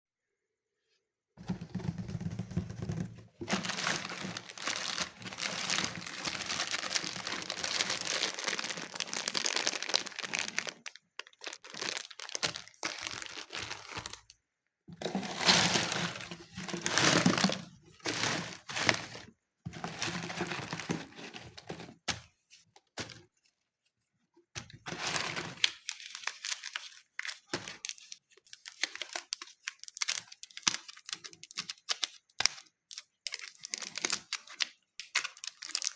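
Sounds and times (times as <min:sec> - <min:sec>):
slime crinkling clicks and squishes: 0:04.3 - 0:14.4, 0:25.6 - 0:35.9.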